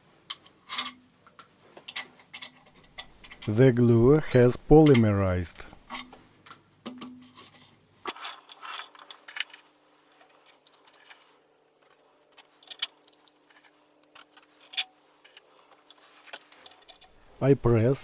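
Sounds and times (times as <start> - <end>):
tools and metal parts clicking: 0.4 - 3.5, 8.1 - 17.2.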